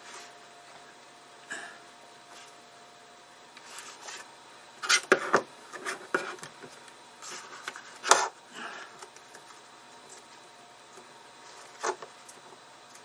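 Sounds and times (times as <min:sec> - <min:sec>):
hands rubbing and handling cables: 0:03.6 - 0:08.4.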